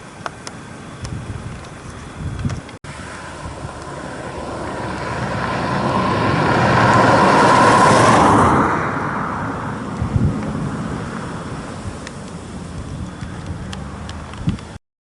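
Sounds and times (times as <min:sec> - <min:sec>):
aircraft passing overhead: 0:02.9 - 0:14.8.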